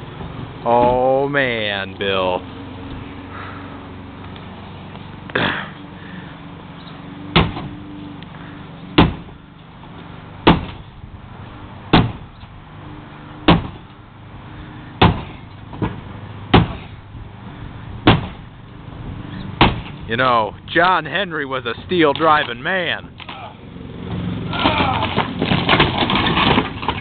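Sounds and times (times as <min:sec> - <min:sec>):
sledgehammer blows on shed: 0:07.3 - 0:07.8, 0:08.9 - 0:09.4, 0:10.4 - 0:10.9, 0:11.9 - 0:12.3, 0:13.4 - 0:13.9, 0:15.0 - 0:17.0, 0:18.0 - 0:18.5, 0:19.6 - 0:20.0.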